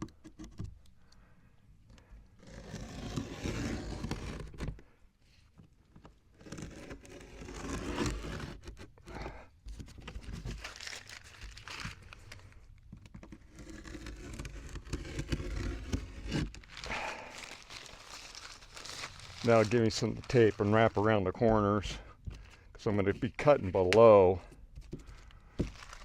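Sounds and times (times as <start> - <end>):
tape crinkling and tearing: 9.9 - 21.3, 24.9 - 26.0.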